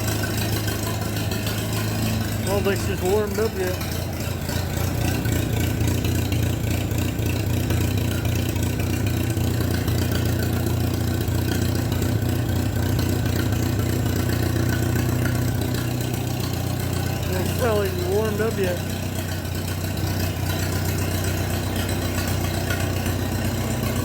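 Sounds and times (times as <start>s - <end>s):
tractor engine idling: 0.0s - 24.0s.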